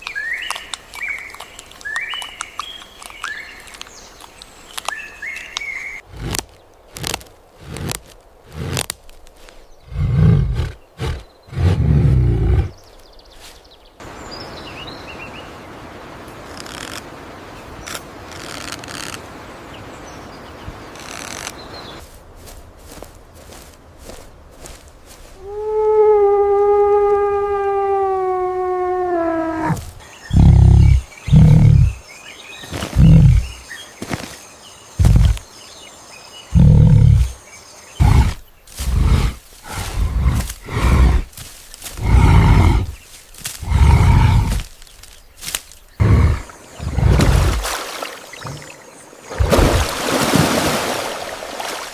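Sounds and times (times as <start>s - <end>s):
faint birds chirping: 0.0s - 49.8s
big cat roaring: 9.9s - 12.8s, 25.7s - 32.0s, 33.0s - 33.6s, 36.5s - 37.4s, 38.0s - 41.3s, 42.0s - 43.0s, 43.6s - 44.7s
outdoor hiss: 13.5s - 22.0s.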